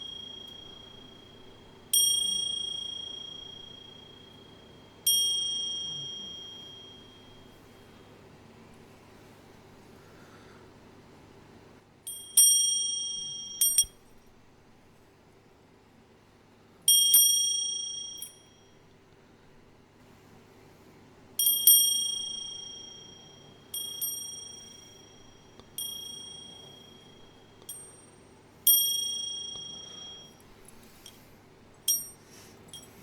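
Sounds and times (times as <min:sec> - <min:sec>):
high bell-like ding: 0:00.0 - 0:08.0, 0:21.4 - 0:30.4, 0:31.9 - 0:33.0.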